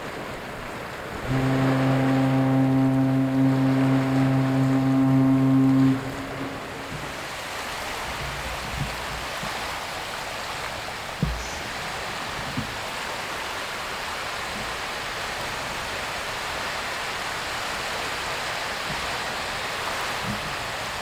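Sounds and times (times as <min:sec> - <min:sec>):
low thumps: 0:01.2 - 0:07.3, 0:11.2 - 0:11.8.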